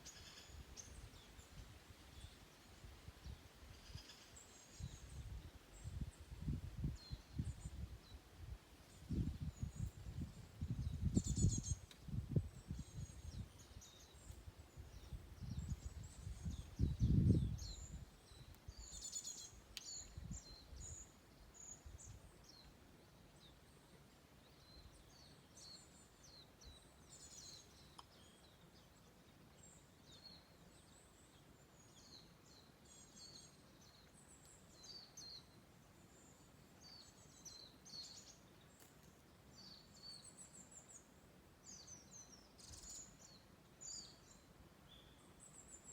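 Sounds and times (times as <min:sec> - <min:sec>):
songbirds chirping and trilling: 0:00.0 - 0:45.9
wind rumble on microphone: 0:04.7 - 0:19.0, 0:19.9 - 0:21.0.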